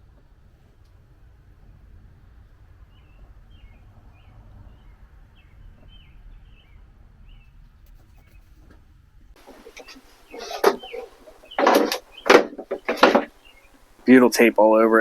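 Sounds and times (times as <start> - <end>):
songbird chirping: 2.9 - 8.5, 9.4 - 15.0.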